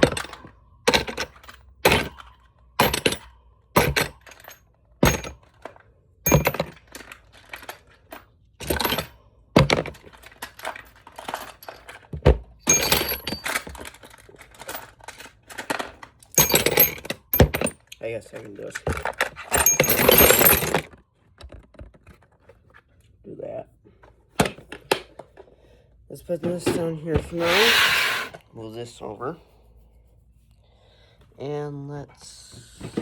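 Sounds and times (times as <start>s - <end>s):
metal tools clattering into bin: 0.0s - 21.0s.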